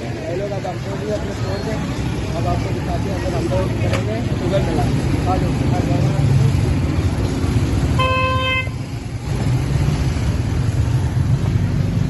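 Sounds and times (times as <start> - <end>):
road traffic rumble: 0.0 - 12.0
car horn toot: 8.0 - 8.8.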